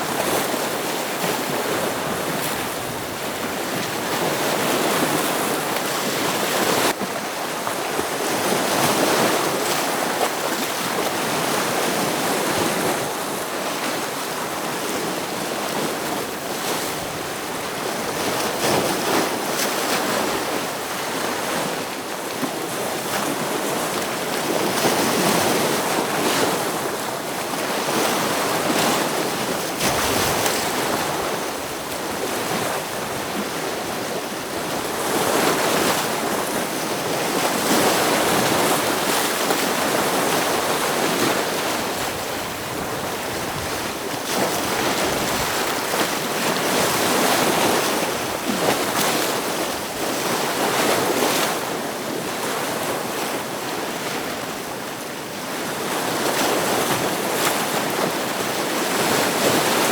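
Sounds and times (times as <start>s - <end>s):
ocean waves breaking on rocks: 0.0s - 59.9s.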